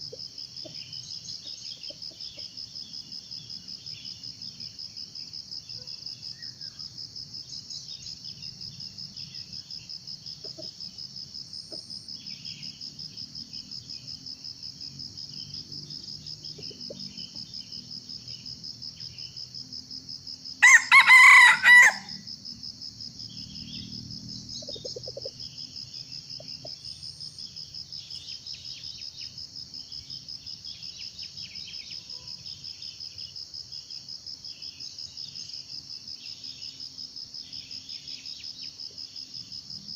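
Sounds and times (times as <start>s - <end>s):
insects trilling: 0.0s - 39.9s
junglefowl crowing: 20.6s - 22.2s.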